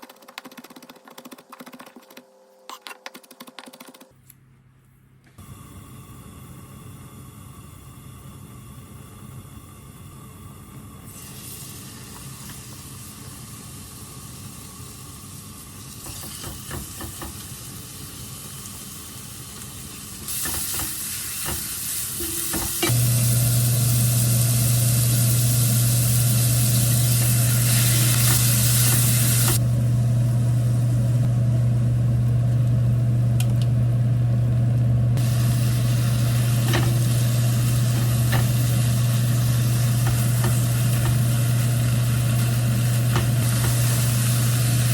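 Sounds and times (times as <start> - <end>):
food sizzling in frying pan: 11.1 - 31.9, 35.2 - 44.9
loud low hum: 22.9 - 44.9.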